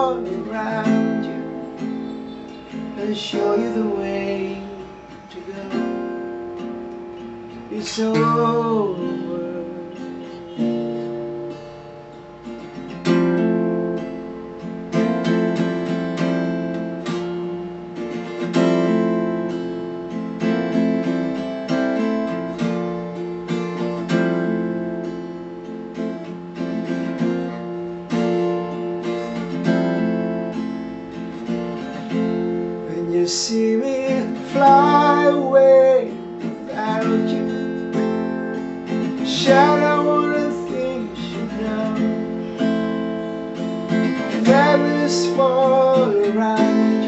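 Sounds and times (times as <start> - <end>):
acoustic guitar strumming chords: 0.0 - 47.0.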